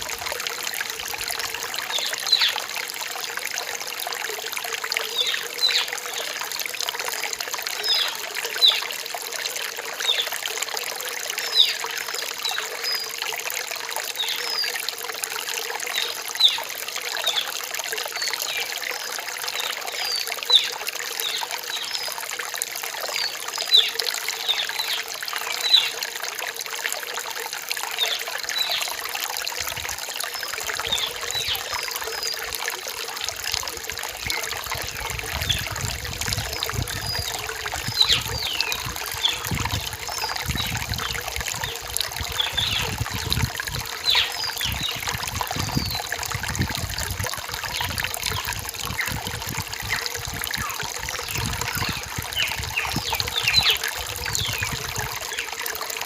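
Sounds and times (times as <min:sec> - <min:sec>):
stream babbling over rocks: 0:00.0 - 0:56.0
birds chirping: 0:36.4 - 0:40.8, 0:41.6 - 0:43.0, 0:44.0 - 0:45.0, 0:51.4 - 0:55.5.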